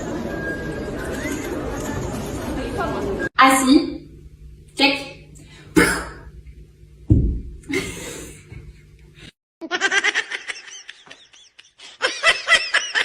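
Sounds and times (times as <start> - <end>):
thump: 7.1 - 7.5
high-pitched laughter: 9.6 - 13.0.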